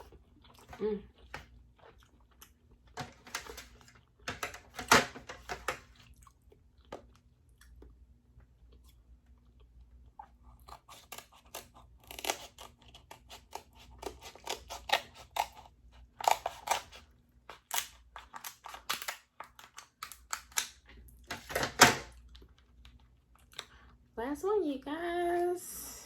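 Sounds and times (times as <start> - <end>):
chewing: 0.0 - 3.0, 5.8 - 21.2, 22.2 - 24.0
crab shell crunching: 9.5 - 21.2.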